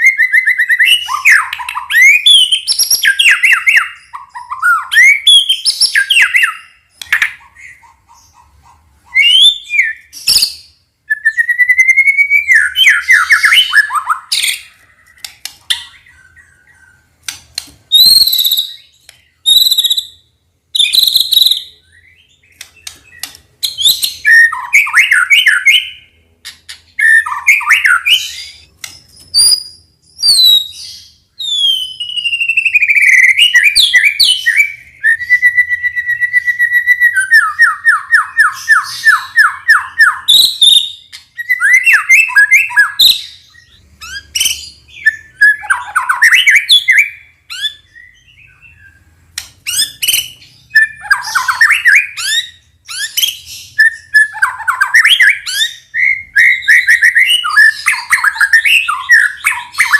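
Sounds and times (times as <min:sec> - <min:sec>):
bird singing whistles: 0:00.0 - 0:07.4, 0:09.1 - 0:14.8, 0:17.9 - 0:26.1, 0:26.9 - 0:59.9
sharp clicks: 0:17.2 - 0:17.8, 0:22.5 - 0:23.5, 0:49.3 - 0:49.8.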